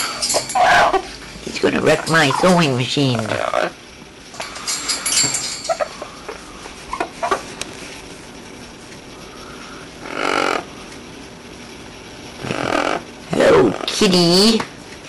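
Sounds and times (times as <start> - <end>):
harsh animal calls: 0.0 - 1.2, 1.9 - 3.8, 9.2 - 10.9, 12.4 - 14.0.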